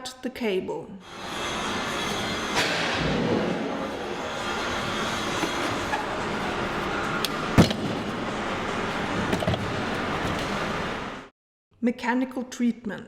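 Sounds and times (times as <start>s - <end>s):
workshop noise: 1.0s - 11.3s
loud bang: 1.2s - 10.6s.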